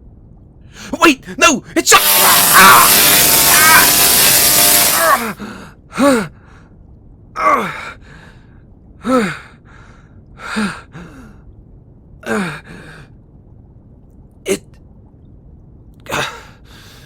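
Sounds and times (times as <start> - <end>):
man gasping and groaning: 5.1 - 6.5.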